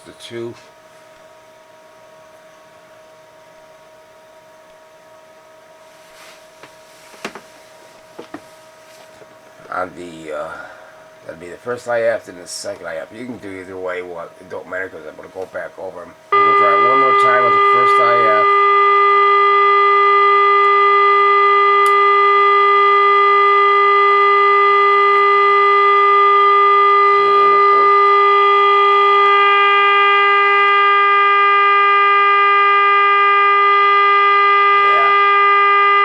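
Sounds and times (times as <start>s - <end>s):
radio test tone: 16.3s - 31.0s, 34.4s - 36.0s.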